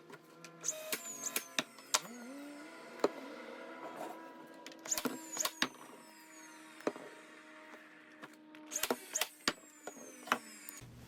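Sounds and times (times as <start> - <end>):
nail gun firing into wood: 4.8 - 5.8, 8.7 - 9.6.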